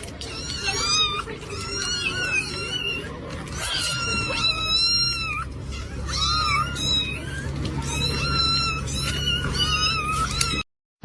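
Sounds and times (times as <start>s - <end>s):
cat meowing: 0.0s - 10.6s.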